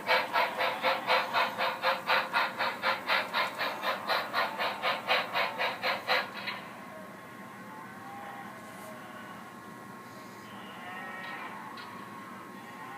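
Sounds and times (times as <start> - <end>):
model steam locomotive chuffing: 0.0 - 7.2.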